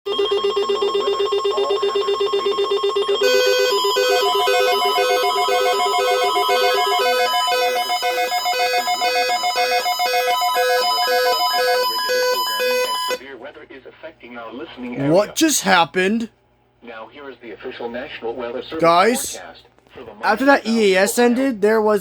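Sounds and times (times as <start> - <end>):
held alarm tone: 0.1 - 13.2.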